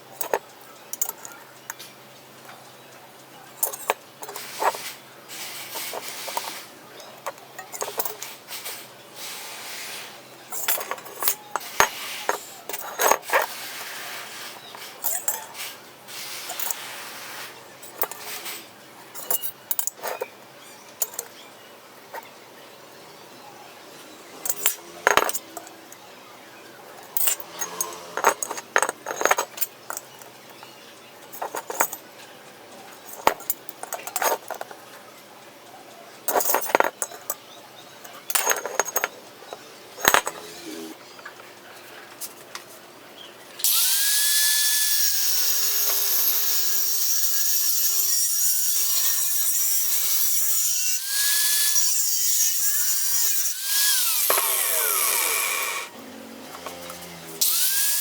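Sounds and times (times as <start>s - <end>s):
metal bar and tools clinking: 0.2s - 1.9s, 3.6s - 8.9s, 10.5s - 13.6s, 14.3s - 16.9s, 17.8s - 20.3s, 21.0s - 21.4s, 24.4s - 26.0s, 27.0s - 32.1s, 32.9s - 34.9s, 36.3s - 41.4s, 44.9s - 55.9s
metal scrapes: 3.6s - 20.3s, 27.0s - 30.1s, 40.0s - 41.2s.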